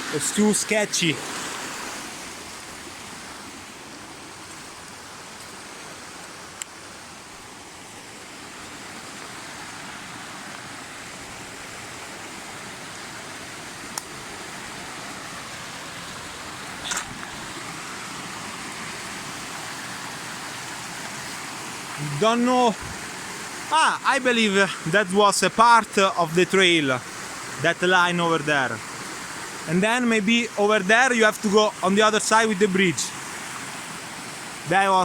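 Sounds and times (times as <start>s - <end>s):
river and waterfall rushing: 0.0s - 35.0s.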